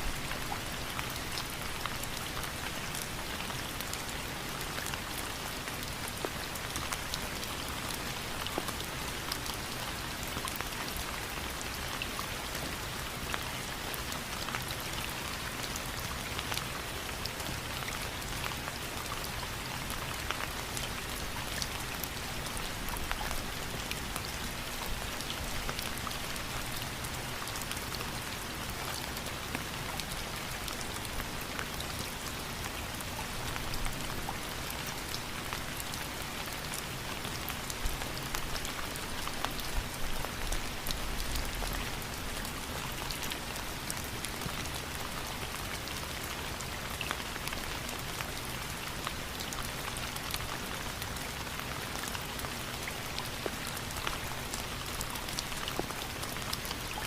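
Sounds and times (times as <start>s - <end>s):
raindrops ticking on a surface: 0.0s - 57.0s
steady rain falling: 0.0s - 57.0s.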